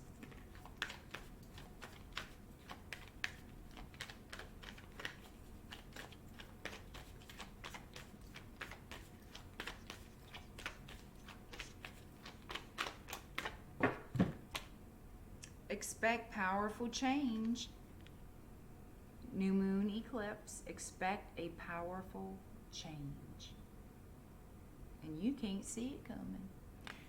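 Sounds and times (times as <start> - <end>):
cards being shuffled: 0.1 - 14.7.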